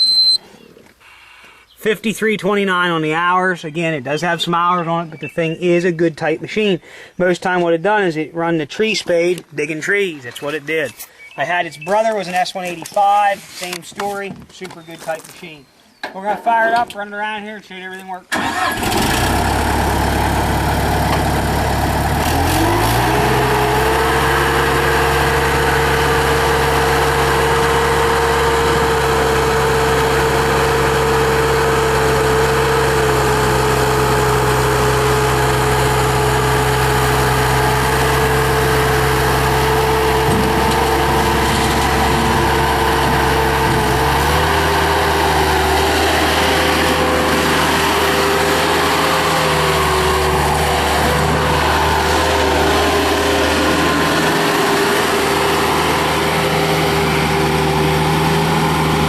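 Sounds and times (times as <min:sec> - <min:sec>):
diesel engine running: 0:18.3 - 0:59.0.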